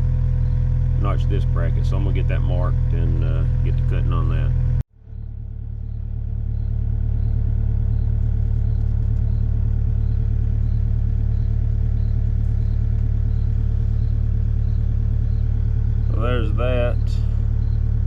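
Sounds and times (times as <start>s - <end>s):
diesel engine idling: 0.0s - 18.0s
faint engine tick: 0.0s - 18.0s.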